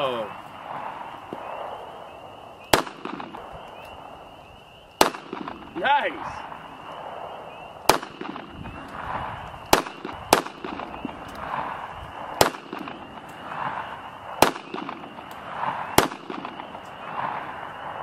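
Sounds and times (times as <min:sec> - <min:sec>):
pistol shots: 0:02.7 - 0:03.6, 0:05.0 - 0:06.5, 0:07.8 - 0:17.5.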